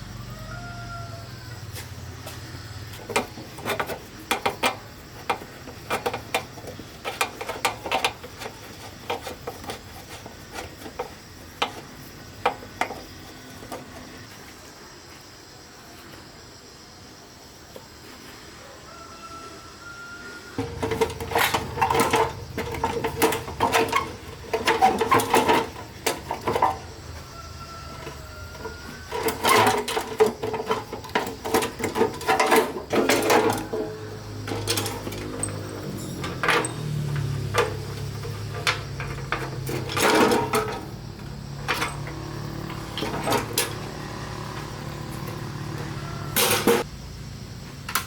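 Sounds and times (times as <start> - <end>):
mechanical hum: 0.0 - 48.0
metallic clinks and knocks: 28.0 - 46.9.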